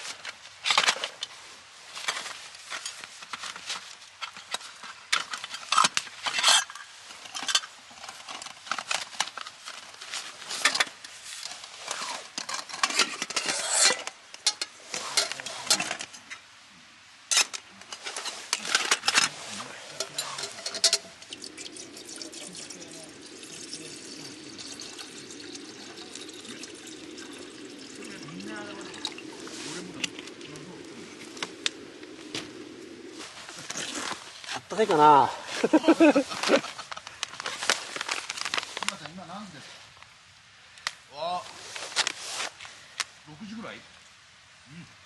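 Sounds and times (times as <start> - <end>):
cookware and utensils clinking: 17.3 - 29.3
steady even noise: 19.8 - 34.4.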